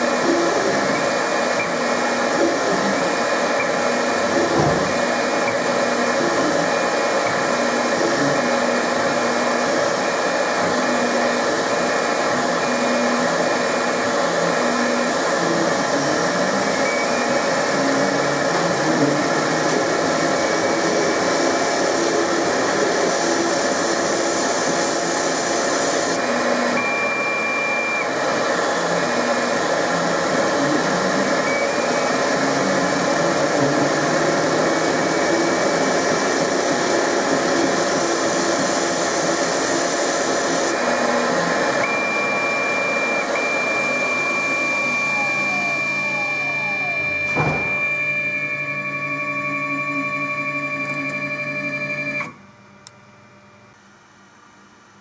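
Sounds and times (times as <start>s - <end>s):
lathe motor and cutting noise: 0.0s - 52.4s
drive motor tones changing pitch: 40.7s - 52.4s
short steady high tone: 41.8s - 52.3s.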